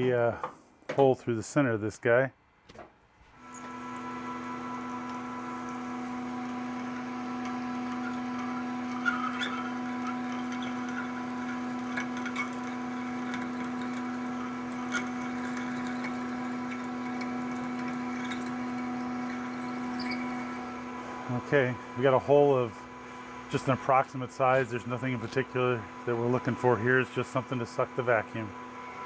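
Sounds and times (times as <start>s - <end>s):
cutter drilling through aluminium: 3.4s - 21.1s
machine spindle running: 3.4s - 29.0s.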